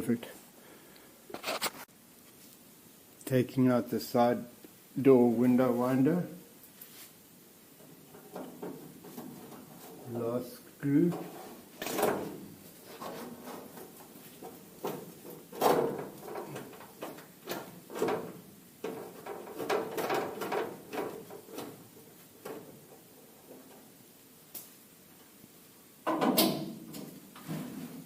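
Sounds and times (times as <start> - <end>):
hand tools clicking and scraping: 10.9 - 23.8.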